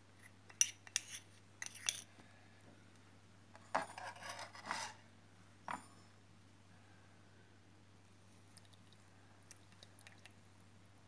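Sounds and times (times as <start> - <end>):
utensil scraping container: 3.8 - 5.0.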